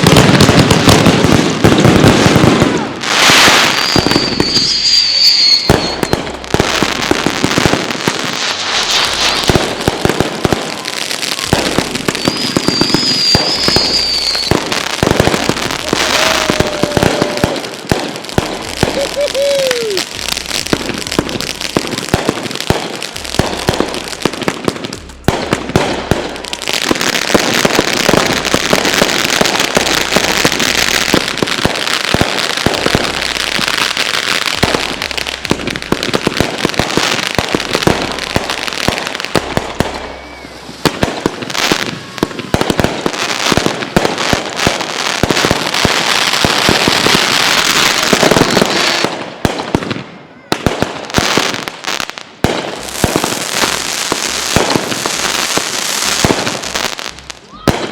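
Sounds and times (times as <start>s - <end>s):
fireworks bangs and crackles: 0.0s - 57.9s
falling firework whistle: 3.1s - 7.7s, 8.5s - 24.0s, 39.4s - 49.0s.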